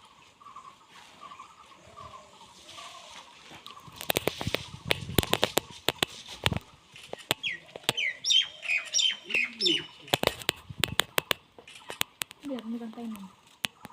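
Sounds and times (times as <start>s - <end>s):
birds chirping: 0.0s - 13.9s
sharp clicks and taps: 4.0s - 8.1s, 10.1s - 13.9s.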